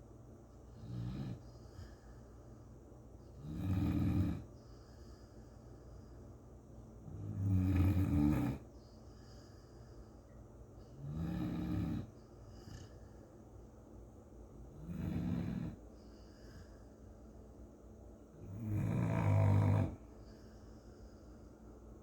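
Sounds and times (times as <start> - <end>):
dog snoring: 0.7 - 2.0, 3.3 - 4.5, 7.0 - 8.7, 10.9 - 13.2, 14.7 - 15.8, 18.4 - 20.4.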